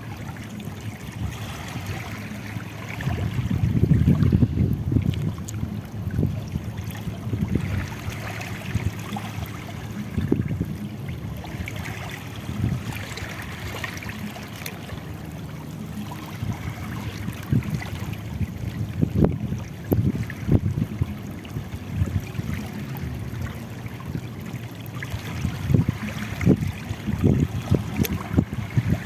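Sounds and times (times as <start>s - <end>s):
seawater lapping on shore: 0.0s - 29.0s.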